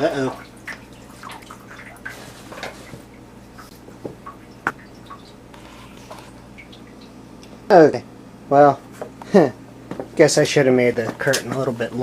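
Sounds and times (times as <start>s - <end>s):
steady low hum: 0.0s - 12.0s
water splashing and dripping: 0.1s - 5.6s, 6.2s - 7.2s.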